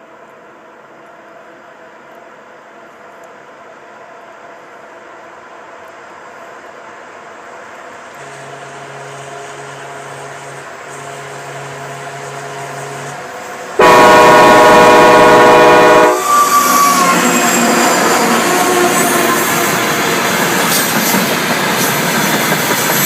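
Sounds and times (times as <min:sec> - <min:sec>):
train running noise: 0:00.0 - 0:23.0
wheel and rail noise: 0:00.0 - 0:23.0
train air horn: 0:08.2 - 0:20.0.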